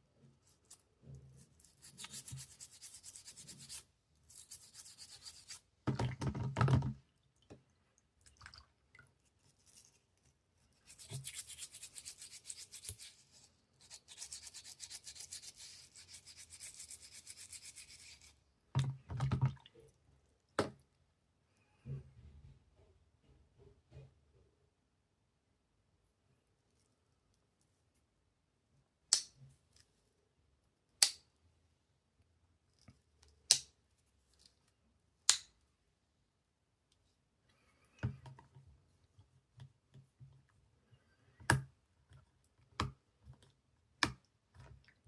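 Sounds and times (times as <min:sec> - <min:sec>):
scrubbing strokes on knife: 0:01.4 - 0:05.6, 0:10.8 - 0:18.3.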